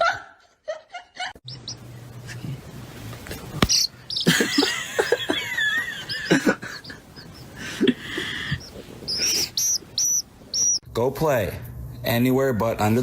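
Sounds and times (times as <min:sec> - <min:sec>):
animal chirping calls: 0:01.4 - 0:01.9, 0:03.7 - 0:10.8.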